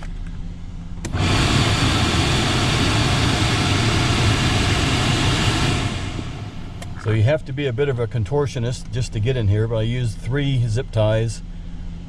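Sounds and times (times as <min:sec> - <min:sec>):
engine idling hum: 0:00.0 - 0:12.0
blower rushing air: 0:01.0 - 0:08.0.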